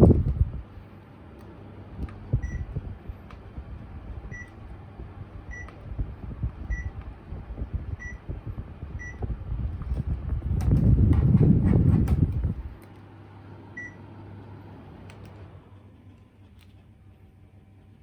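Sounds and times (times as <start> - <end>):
low hum: 0.0 - 14.0
air conditioner short beeps: 2.3 - 2.8, 4.3 - 4.6, 5.4 - 5.9, 6.6 - 7.0, 7.9 - 8.3, 8.9 - 9.3, 13.6 - 14.2.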